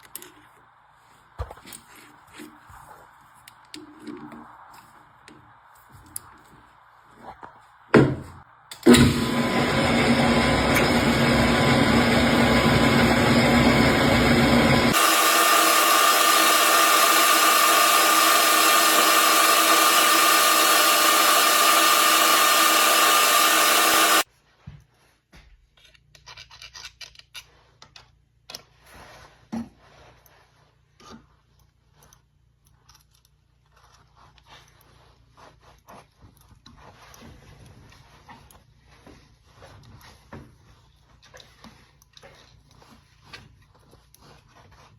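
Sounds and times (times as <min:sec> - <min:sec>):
metal lathe cutting: 0:08.9 - 0:24.2.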